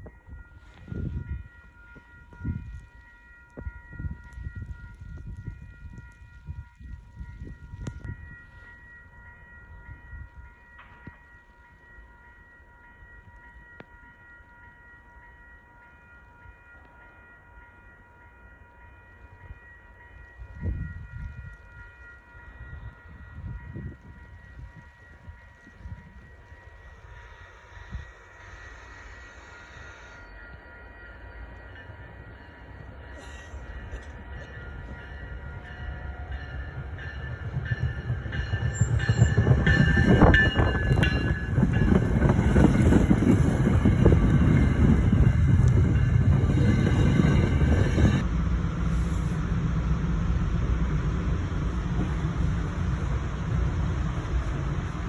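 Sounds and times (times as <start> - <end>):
passenger train rumbling: 0.0 - 55.0
high whine: 22.1 - 55.0.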